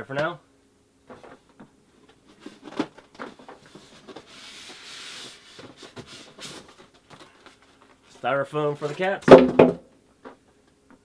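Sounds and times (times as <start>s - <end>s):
cardboard rubbing scrape: 3.6s - 6.9s.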